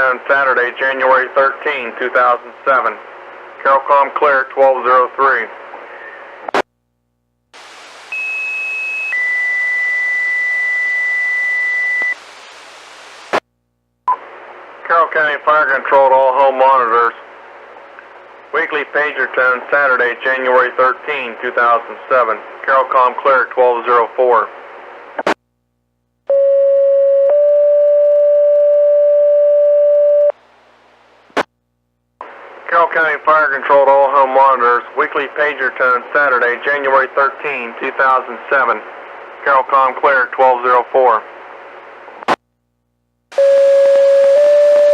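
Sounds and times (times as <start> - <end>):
radio static hiss: 7.6 - 9.2, 11.9 - 13.5, 14.1 - 25.4, 32.2 - 42.4
two-tone pager alert: 43.4 - 44.9.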